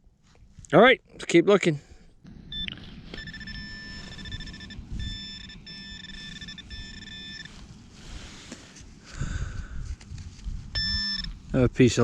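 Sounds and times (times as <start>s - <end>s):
metal detector electronic tone: 2.4s - 7.7s, 10.7s - 11.4s
detector rustling: 2.5s - 11.6s.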